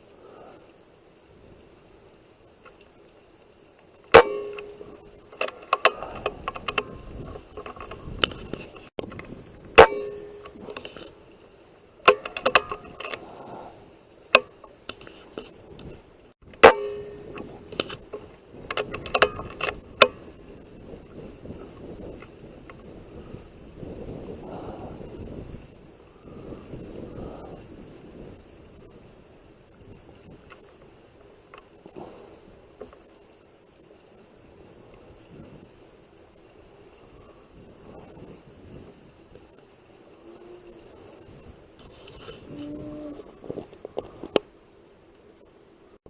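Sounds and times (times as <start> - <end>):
clicks and rattles: 4.0 - 11.2, 12.0 - 13.2, 14.3 - 20.2.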